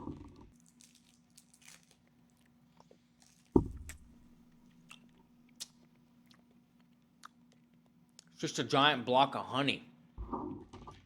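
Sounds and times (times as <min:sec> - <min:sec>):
wrapper crinkles and clicks: 0:00.6 - 0:03.6.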